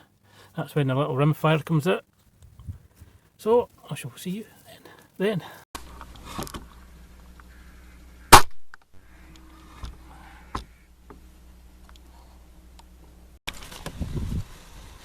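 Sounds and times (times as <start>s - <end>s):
air rifle shot: 8.3s - 8.7s.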